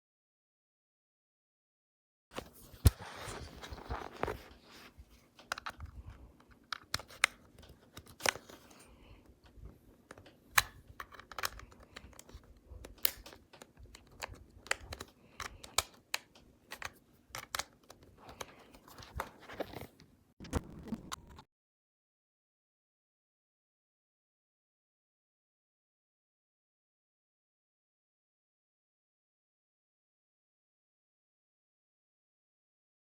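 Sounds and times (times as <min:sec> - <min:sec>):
packaging rustling: 0:02.4 - 0:04.9
faint steady hum: 0:02.4 - 0:21.4.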